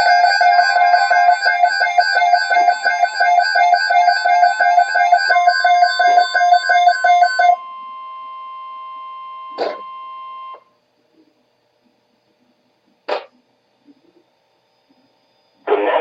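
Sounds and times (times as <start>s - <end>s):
buzzy alarm beeps: 0.0s - 10.7s
steady warning tone: 0.0s - 11.3s.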